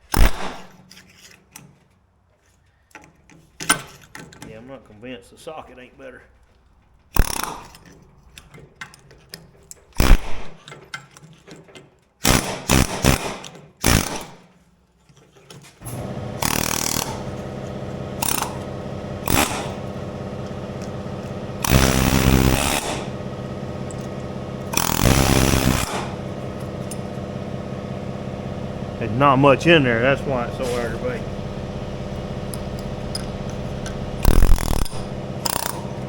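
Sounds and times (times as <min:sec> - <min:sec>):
air hammer bursts: 0:07.2 - 0:07.7, 0:12.2 - 0:14.4, 0:15.8 - 0:17.4, 0:18.2 - 0:20.0, 0:21.5 - 0:23.2, 0:24.7 - 0:26.3, 0:34.2 - 0:36.0
steady motor drone: 0:12.3 - 0:14.3, 0:15.8 - 0:36.0
hammer striking steel: 0:18.2 - 0:20.0, 0:24.7 - 0:27.1.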